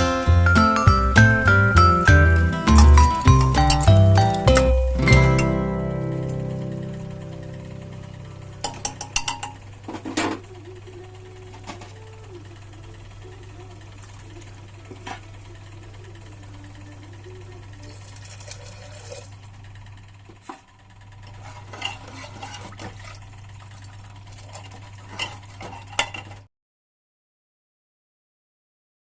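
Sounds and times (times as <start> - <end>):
low electrical hum: 0.0 - 26.4
metal utensils clinking on pot: 8.6 - 10.3, 21.3 - 22.8, 24.5 - 26.5.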